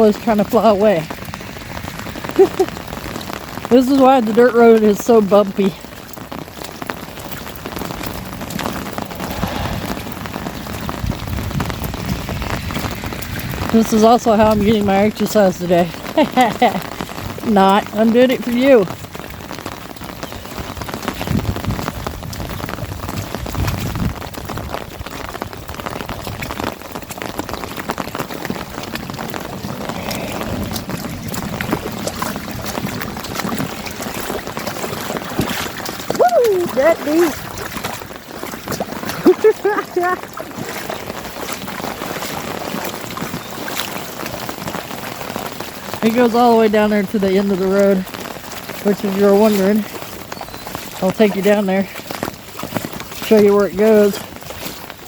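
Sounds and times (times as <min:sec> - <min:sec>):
rain on an umbrella: 0:00.0 - 0:55.0
running water: 0:00.0 - 0:55.0
low rumble: 0:08.2 - 0:17.5.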